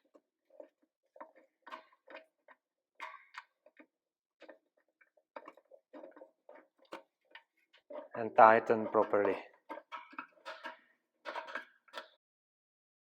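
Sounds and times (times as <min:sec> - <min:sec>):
small metallic clicks and taps: 0:08.8 - 0:12.2.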